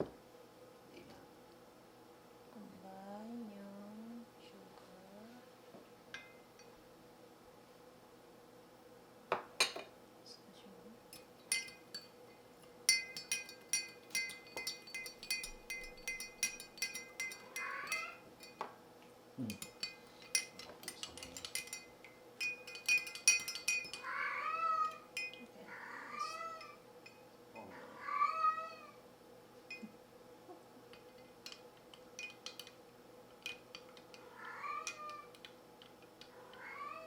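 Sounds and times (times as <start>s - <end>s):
utensil clinking in mixing bowl: 6.1s - 6.8s, 11.1s - 18.7s, 19.5s - 25.5s, 30.9s - 36.3s
cat meowing: 24.1s - 24.9s, 25.7s - 26.7s, 27.7s - 29.0s, 34.3s - 35.3s, 36.5s - 37.0s.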